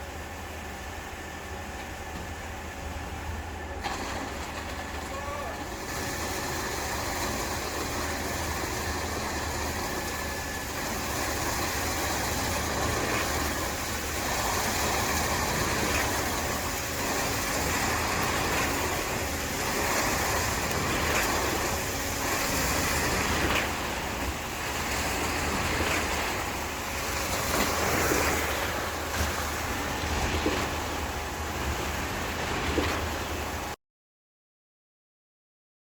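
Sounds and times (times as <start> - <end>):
concrete pump truck running: 0.0 - 33.8.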